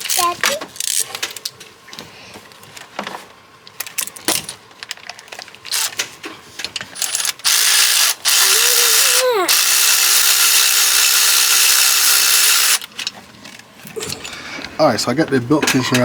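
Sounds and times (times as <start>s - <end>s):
power tool running: 7.0s - 12.9s.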